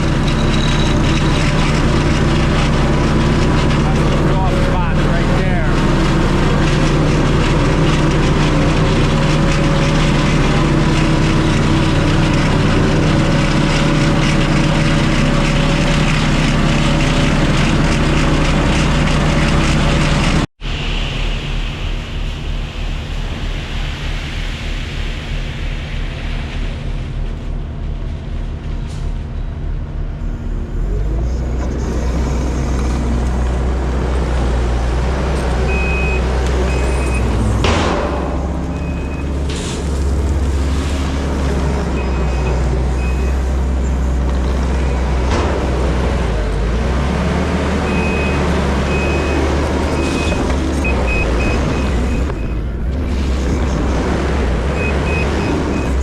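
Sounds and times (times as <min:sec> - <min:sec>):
diesel engine running: 0:00.0 - 0:56.0
backup alarm beeping: 0:35.7 - 0:37.4, 0:47.9 - 0:53.1, 0:54.5 - 0:56.0.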